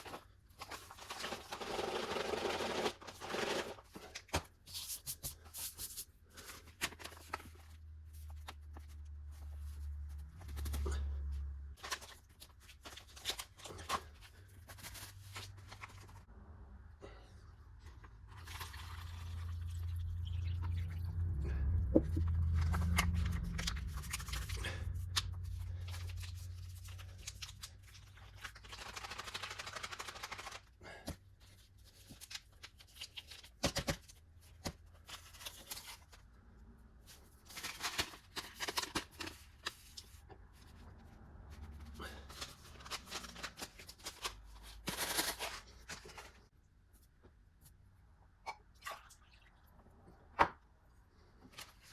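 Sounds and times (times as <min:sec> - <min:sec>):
packaging crinkling and tearing: 0:00.0 - 0:09.7, 0:22.5 - 0:30.7, 0:37.1 - 0:40.2, 0:41.6 - 0:46.5
low hum: 0:16.3 - 0:27.5.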